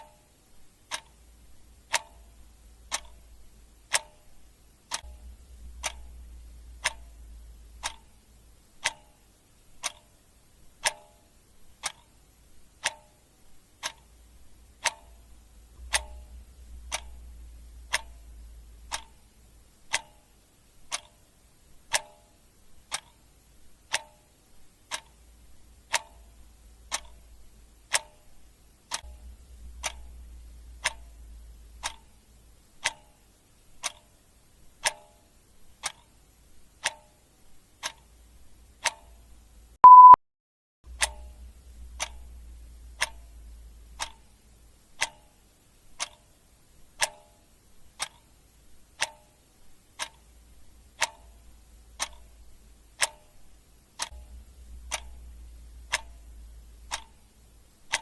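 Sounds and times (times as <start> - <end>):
clock ticking: 0.0 - 40.2, 40.9 - 58.0
short loud beep: 39.8 - 40.2.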